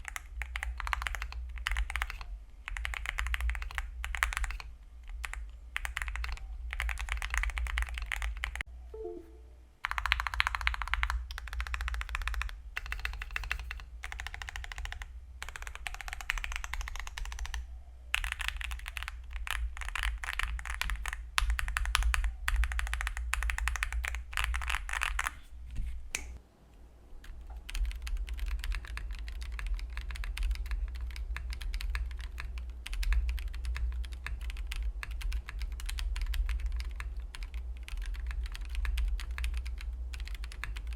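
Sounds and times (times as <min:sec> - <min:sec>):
typing on mechanical keyboard: 0:00.0 - 0:08.6, 0:09.8 - 0:25.4, 0:27.2 - 0:40.9.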